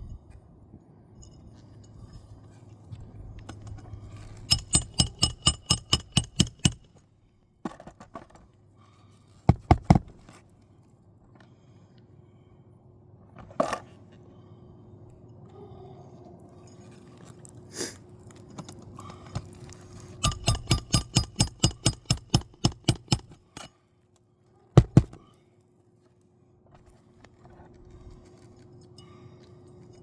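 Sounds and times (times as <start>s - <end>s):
hammer striking roofing nail: 4.5s - 6.9s, 9.5s - 10.1s, 20.2s - 23.7s, 24.8s - 25.2s
single knock: 24.8s - 25.2s.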